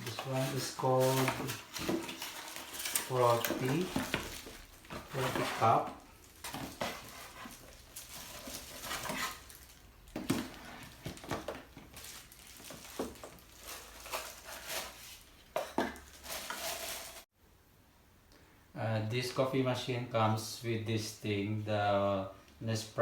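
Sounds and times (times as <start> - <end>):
packaging rustling and clinks: 0.0 - 17.3.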